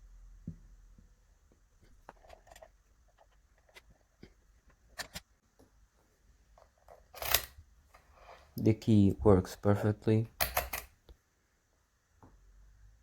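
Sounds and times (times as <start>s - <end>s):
key scraping in a lock: 6.9s - 7.6s
key clicking in a lock: 10.4s - 10.9s
sharp lock clicks: 10.4s - 10.9s.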